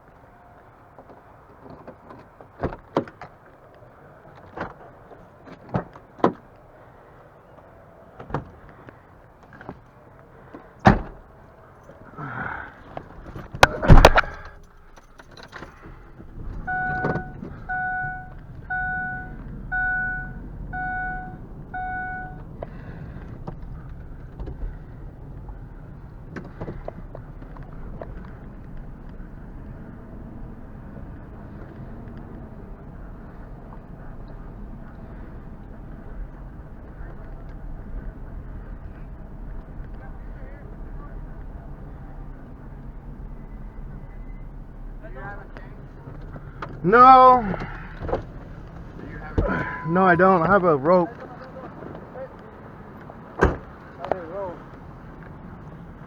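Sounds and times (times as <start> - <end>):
engine idling low rumble: 10.0 - 56.0
car door slam: 10.8 - 11.2, 13.5 - 14.6, 16.6 - 22.4, 49.3 - 49.9, 53.4 - 53.8
knocks and clicks climbing in: 12.9 - 30.4, 47.5 - 50.0
chime beeps: 16.7 - 22.4.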